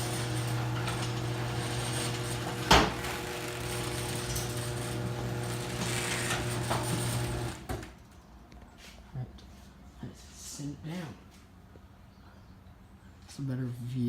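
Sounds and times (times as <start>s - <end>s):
garage door opener motor hum: 0.0s - 8.0s.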